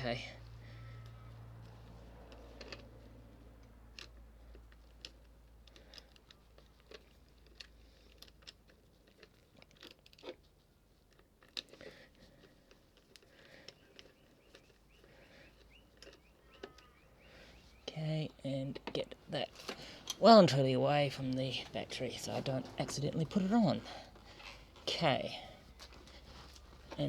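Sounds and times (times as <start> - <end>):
hand tool clicking and scraping: 18.8 - 24.9.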